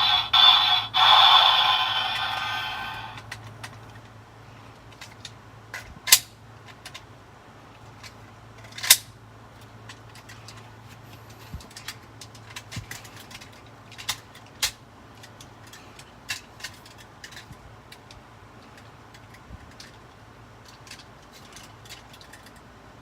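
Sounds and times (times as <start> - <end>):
low steady hum: 0.0 - 23.0
plastic toy clicks: 11.7 - 18.1.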